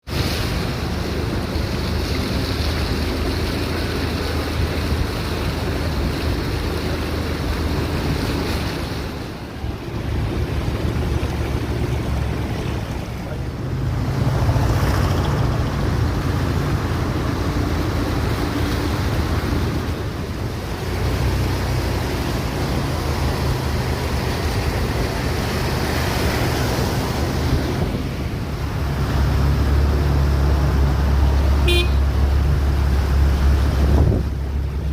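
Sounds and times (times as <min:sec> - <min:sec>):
vehicle engines humming: 0:00.0 - 0:34.9
water sloshing and splashing: 0:00.0 - 0:34.9
wind buffeting microphone: 0:32.2 - 0:34.9.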